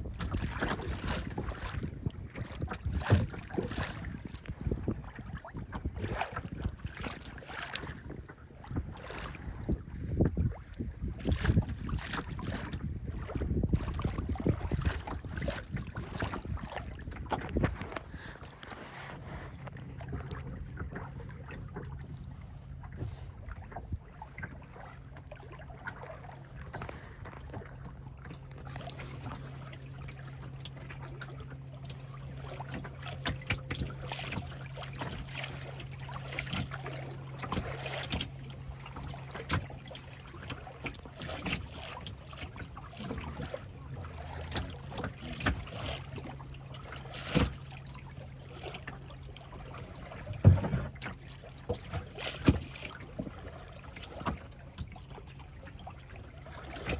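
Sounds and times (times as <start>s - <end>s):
boat motor humming: 0.0s - 56.9s
water slapping against hull: 0.0s - 56.9s
knock on hull: 50.4s - 50.9s.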